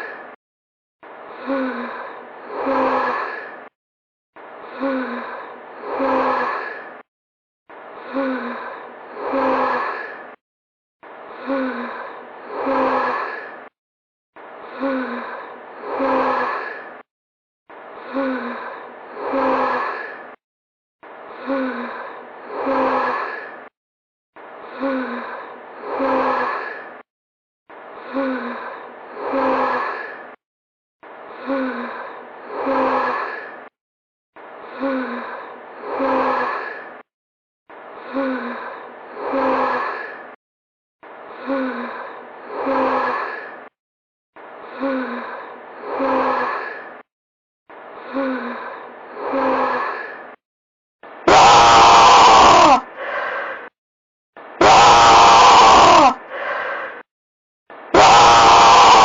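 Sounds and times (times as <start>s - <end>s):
breathy sigh-like voice: 55.9s - 57.1s.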